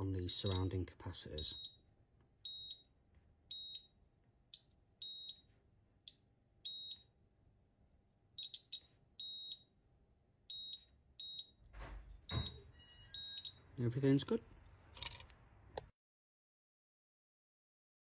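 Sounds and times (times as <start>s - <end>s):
multimeter short high beeps: 2.5s - 2.9s, 3.5s - 3.9s, 5.0s - 5.4s, 6.6s - 7.1s, 8.4s - 9.7s, 10.5s - 11.6s, 12.3s - 13.7s.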